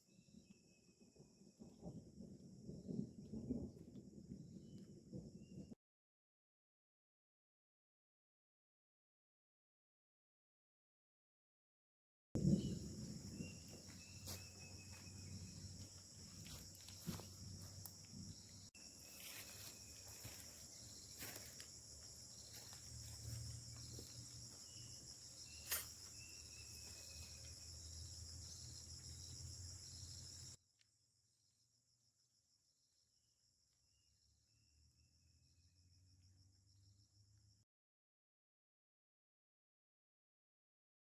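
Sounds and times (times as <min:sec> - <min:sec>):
insects chirring: 0:12.4 - 0:30.6.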